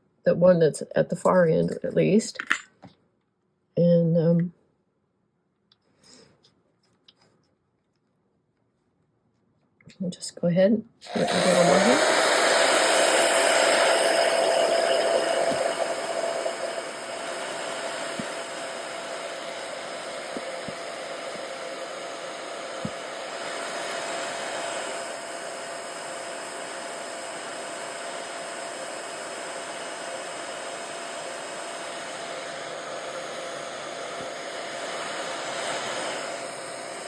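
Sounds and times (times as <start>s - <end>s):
hair dryer blowing: 11.0s - 37.0s.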